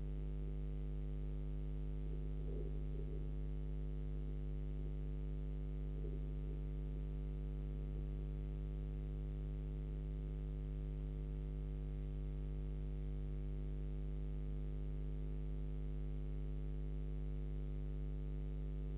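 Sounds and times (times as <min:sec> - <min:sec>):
electrical mains hum: 0:00.0 - 0:12.1.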